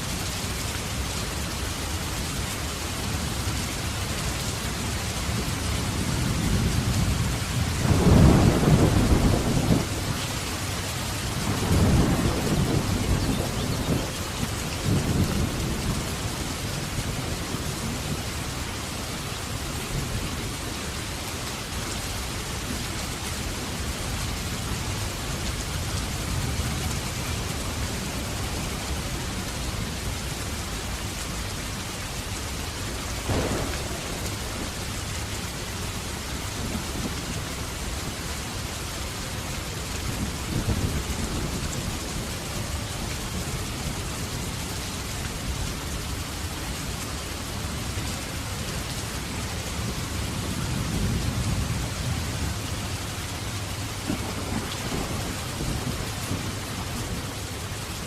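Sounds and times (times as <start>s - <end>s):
heavy rain: 0.0s - 58.0s
thunder rumbling: 5.9s - 18.3s, 33.2s - 38.2s, 53.9s - 58.0s.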